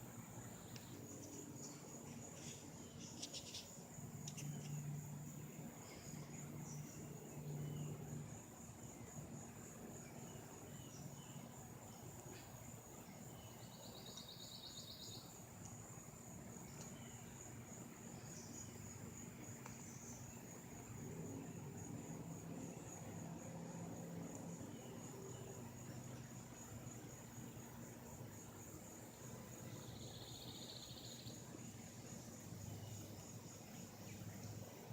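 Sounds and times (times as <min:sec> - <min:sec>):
louder pulsed insect trill: 0:12.7 - 0:34.9.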